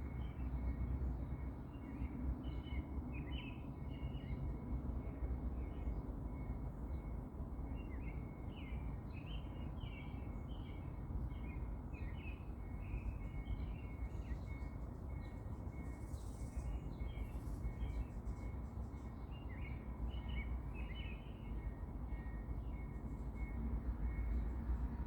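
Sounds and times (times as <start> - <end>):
songbirds chirping: 5.6 - 25.0.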